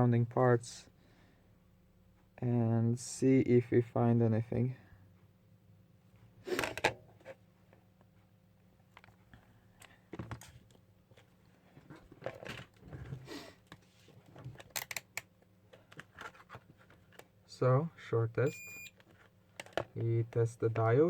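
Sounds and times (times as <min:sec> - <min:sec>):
low steady hum: 0:00.0 - 0:21.0
clicks and rustles of handling: 0:06.6 - 0:17.4, 0:18.9 - 0:21.0.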